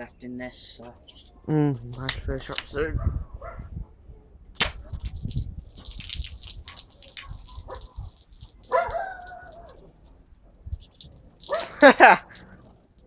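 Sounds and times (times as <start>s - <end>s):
toy shotgun firing crack: 4.6s - 5.0s.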